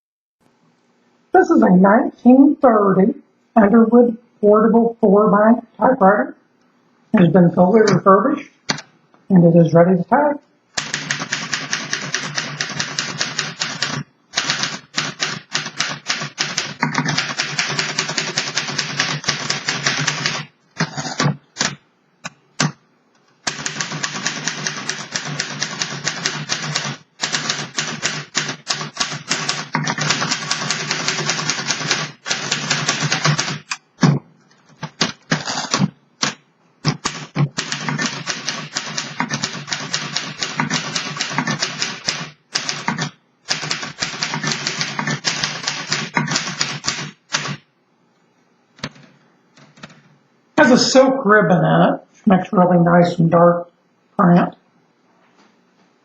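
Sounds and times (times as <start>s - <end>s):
manual typewriter typing: 10.8s - 21.8s, 23.4s - 33.8s, 34.8s - 47.6s.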